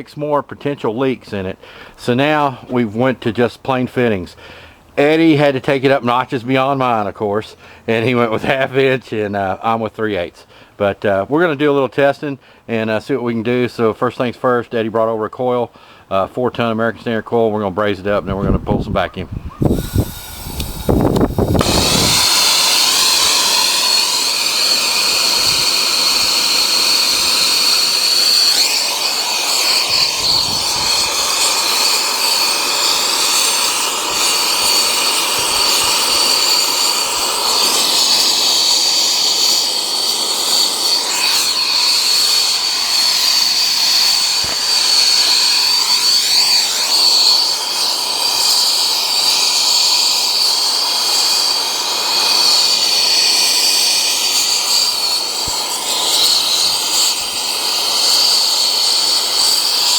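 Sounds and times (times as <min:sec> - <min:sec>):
high whistling tone: 0:19.4 - 0:59.9
gas blasting through coil: 0:19.6 - 0:59.9.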